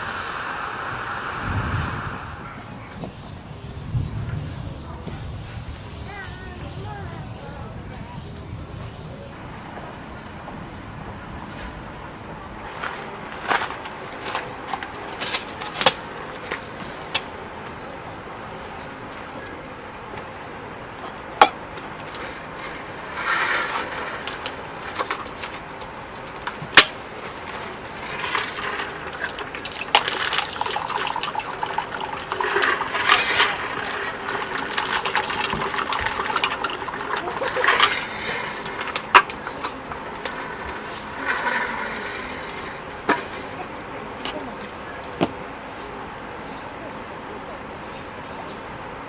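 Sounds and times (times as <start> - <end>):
water running: 0.0 - 2.6, 28.0 - 44.0.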